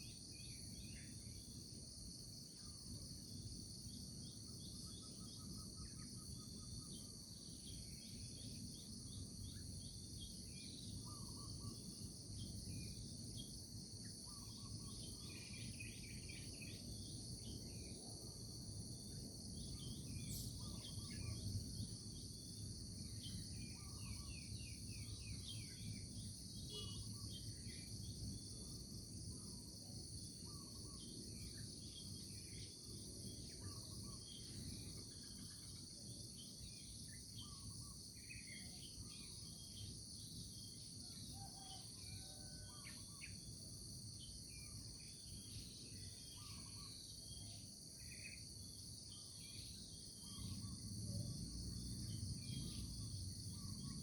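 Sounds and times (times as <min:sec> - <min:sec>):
bird chirps: 0:19.6 - 0:22.2, 0:23.1 - 0:28.0.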